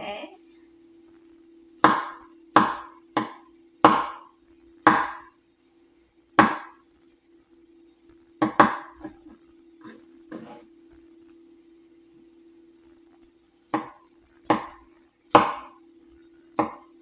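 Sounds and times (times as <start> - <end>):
steady low hum: 0.0 - 17.0
knife chopping on wooden board: 1.8 - 4.2, 16.6 - 16.8.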